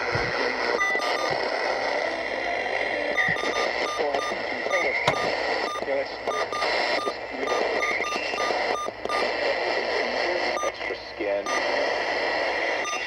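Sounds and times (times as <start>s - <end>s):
faint garbled speech: 0.0s - 12.5s
radio static hiss: 0.0s - 13.0s
short interference beeps: 0.7s - 1.4s, 3.1s - 9.3s, 10.5s - 10.8s, 11.4s - 11.7s, 12.8s - 13.0s.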